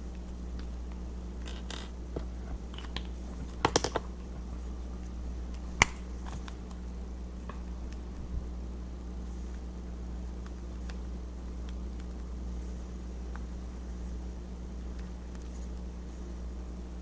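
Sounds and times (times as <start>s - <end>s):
low hum: 0.0s - 17.0s
light clicks and scratches: 10.4s - 16.4s.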